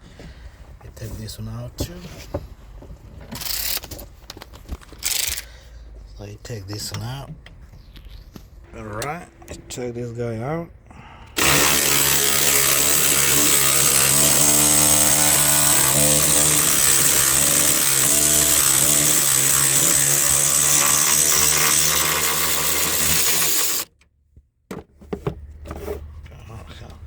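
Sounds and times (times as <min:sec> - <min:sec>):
cordless power driver running: 0:05.0 - 0:05.4, 0:11.4 - 0:23.9.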